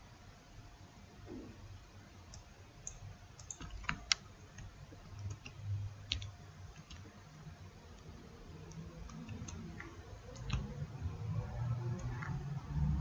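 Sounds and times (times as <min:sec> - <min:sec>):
keyboard keystroke clicks: 0:02.3 - 0:07.1, 0:08.7 - 0:10.8
sharp mouse clicks: 0:02.3 - 0:07.1, 0:08.7 - 0:10.7.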